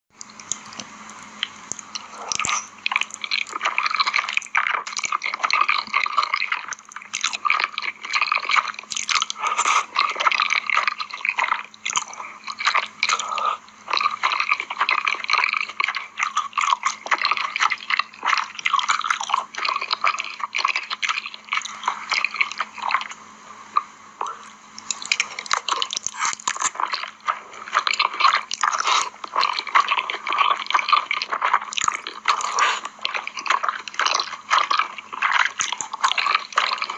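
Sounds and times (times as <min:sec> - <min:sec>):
person chewing noodles: 0:00.2 - 0:36.9.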